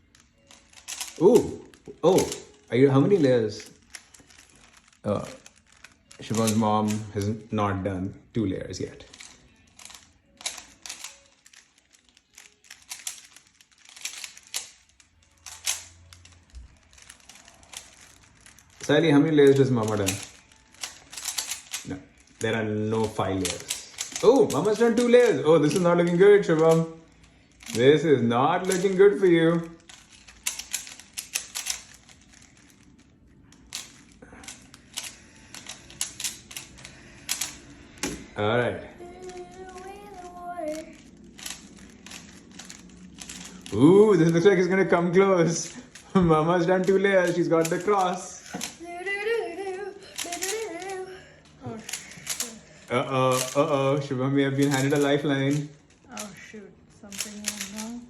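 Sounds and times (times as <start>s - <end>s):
puzzle cube clicking: 0.1s - 2.6s, 9.1s - 28.0s, 28.6s - 33.0s, 33.6s - 38.4s, 39.2s - 44.6s, 45.4s - 48.8s, 50.1s - 51.0s, 51.8s - 53.9s, 54.5s - 56.4s, 57.0s - 58.0s
puzzle cube layers clicking: 12.4s - 18.0s, 29.8s - 32.7s, 54.5s - 55.7s, 57.1s - 57.9s.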